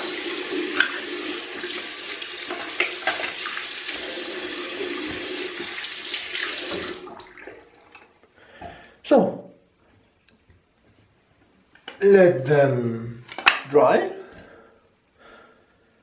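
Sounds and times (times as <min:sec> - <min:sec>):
tap water running into sink: 0:00.0 - 0:08.2.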